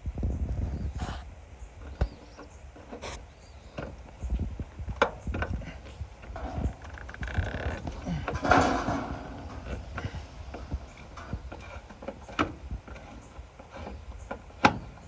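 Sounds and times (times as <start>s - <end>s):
rubbing and handling noise: 1.8s - 15.0s
hand tools clicking and knocking: 5.0s - 15.0s.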